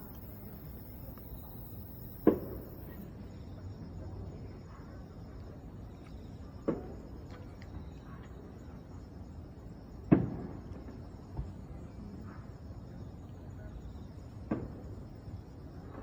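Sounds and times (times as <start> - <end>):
insects chirring: 0.0 - 16.0
fireworks booming: 1.6 - 3.0, 10.1 - 11.5.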